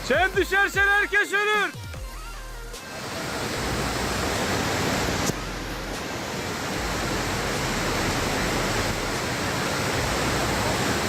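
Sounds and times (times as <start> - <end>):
waterfall rushing: 2.6 - 11.0.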